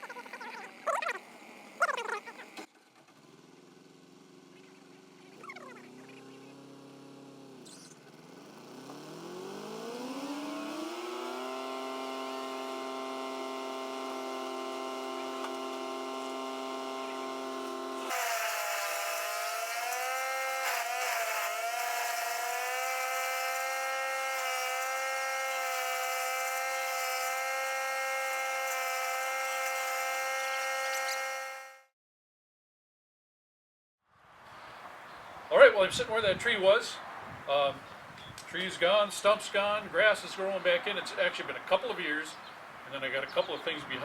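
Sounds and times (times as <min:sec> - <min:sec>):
chainsaw cutting wood: 0:00.0 - 0:31.9
chainsaw revving: 0:00.0 - 0:31.9.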